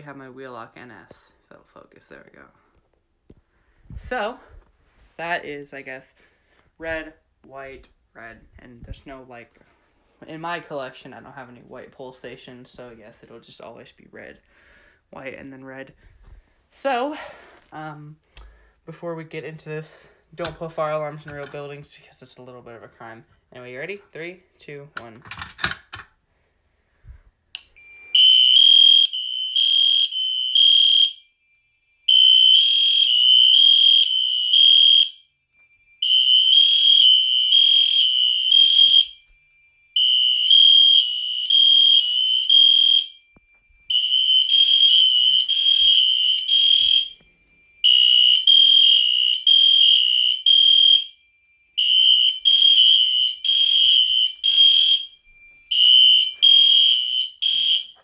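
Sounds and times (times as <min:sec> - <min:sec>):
fire alarm horn pulsing: 0:27.7 - 0:58.0.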